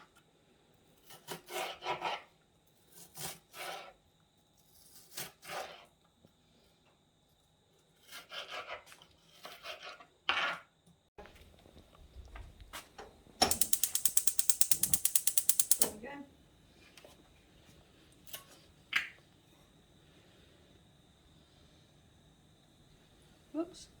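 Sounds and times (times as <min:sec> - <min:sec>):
knife sawing on cutting board: 0:08.0 - 0:10.6.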